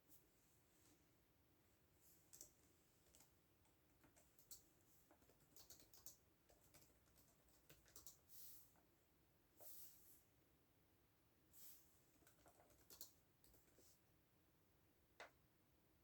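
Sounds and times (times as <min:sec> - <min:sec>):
keyboard typing: 0:02.3 - 0:08.3, 0:12.2 - 0:13.8.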